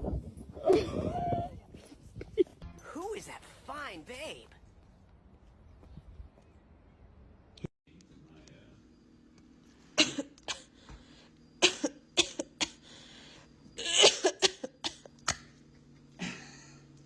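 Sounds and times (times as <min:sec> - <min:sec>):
person coughing: 0:13.8 - 0:15.0.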